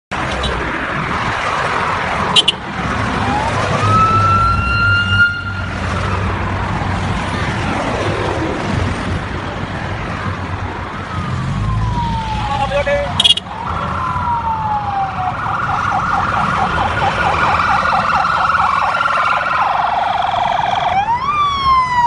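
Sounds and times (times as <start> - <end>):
vehicles driving past: 0.1 - 22.0
siren wailing: 3.1 - 6.2, 11.0 - 22.0.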